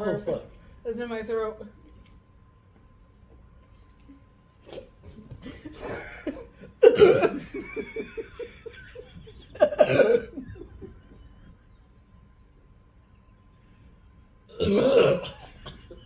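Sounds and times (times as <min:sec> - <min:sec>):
person coughing: 0:04.7 - 0:07.9, 0:09.6 - 0:10.5, 0:14.5 - 0:15.9
person laughing: 0:04.7 - 0:11.6.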